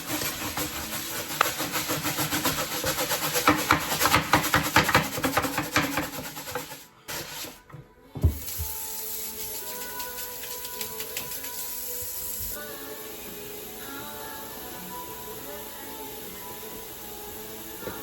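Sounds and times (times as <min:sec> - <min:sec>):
dish being rubbed by hand: 0:00.0 - 0:07.7.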